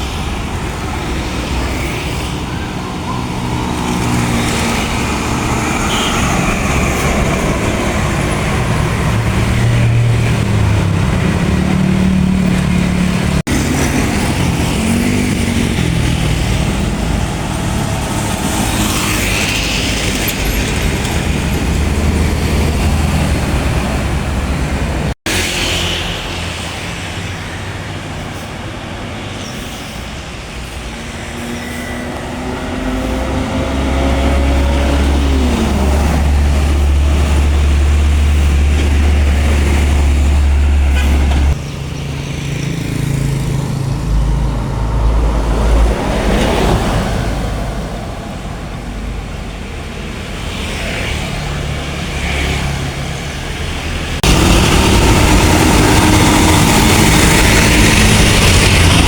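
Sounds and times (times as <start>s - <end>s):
bus engine accelerating: 0.0s - 50.5s, 51.2s - 59.0s
diesel buses passing: 0.0s - 59.0s
traffic noise: 0.0s - 59.0s.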